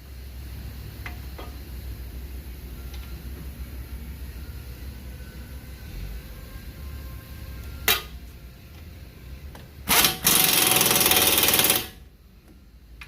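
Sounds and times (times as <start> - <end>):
impact wrench hammering: 9.9 - 12.0.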